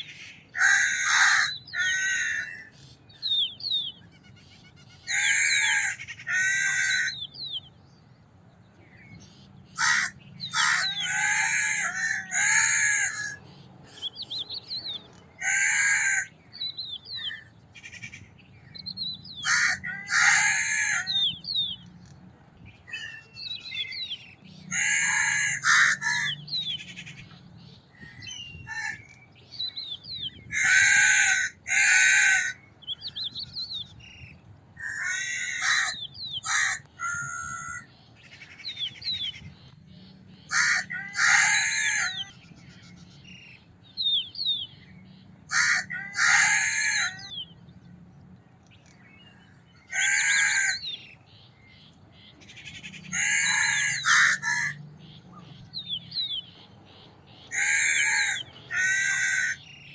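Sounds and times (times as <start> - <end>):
small birds chirping: 0.0 - 59.9
crows cawing: 0.5 - 2.8, 5.0 - 7.3, 9.8 - 14.0, 15.4 - 16.4, 19.4 - 21.3, 24.7 - 26.5, 30.5 - 32.7, 34.8 - 38.6, 40.4 - 43.3, 45.4 - 47.3, 49.8 - 50.9, 52.4 - 55.2, 57.5 - 59.7.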